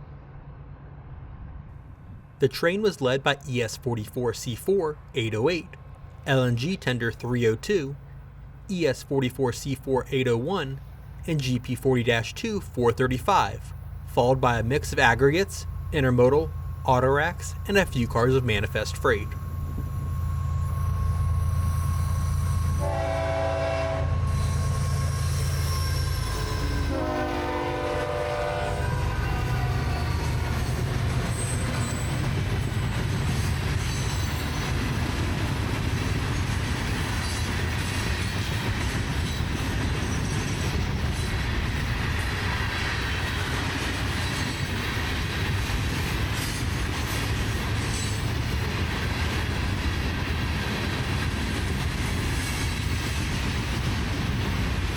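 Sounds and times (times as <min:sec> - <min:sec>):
diesel locomotive engines droning: 0:00.0 - 0:54.9
train air horn blasts: 0:22.3 - 0:30.0
freight cars rumbling and clattering: 0:29.1 - 0:54.9.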